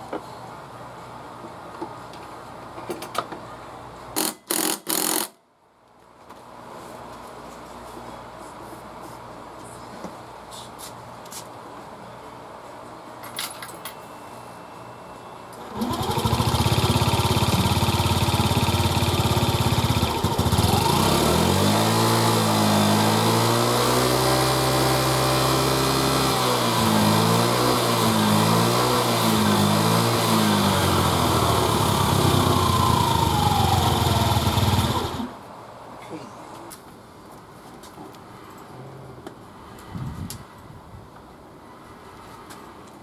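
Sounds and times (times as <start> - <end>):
scooter engine idling and revving: 15.7 - 35.4.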